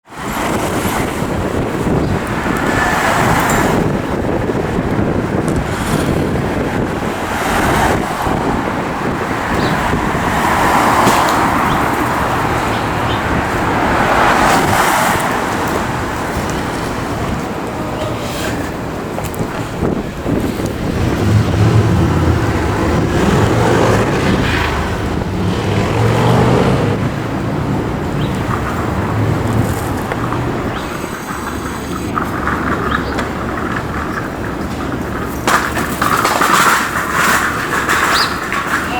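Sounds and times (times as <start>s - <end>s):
cars passing on street: 0.0s - 38.9s
heavy vehicle engine running: 19.8s - 35.4s.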